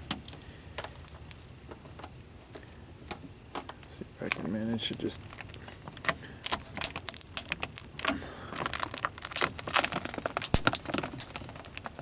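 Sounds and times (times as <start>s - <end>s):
plastic sheet crinkling and crackling: 4.3s - 12.0s.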